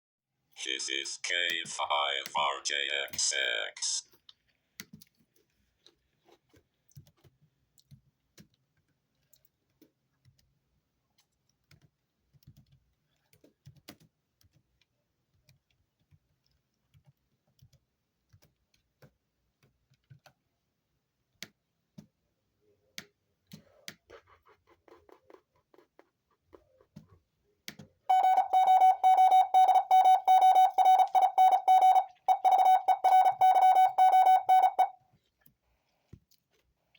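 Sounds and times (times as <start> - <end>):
morse code beeps: 28.1 - 35.0.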